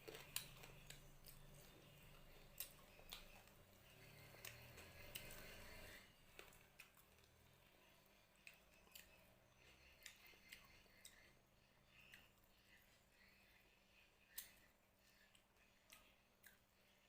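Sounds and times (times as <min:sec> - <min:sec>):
chewing and mouth smacks: 0:00.0 - 0:07.8.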